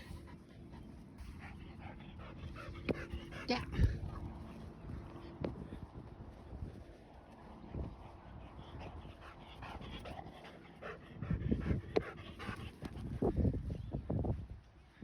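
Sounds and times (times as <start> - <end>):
dog panting: 0.0 - 5.4, 7.6 - 13.6.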